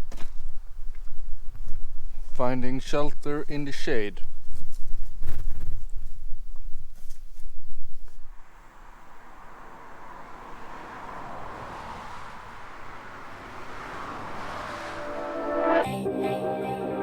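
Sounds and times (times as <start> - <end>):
passing vehicle road noise: 8.3 - 15.8
music: 15.3 - 17.0.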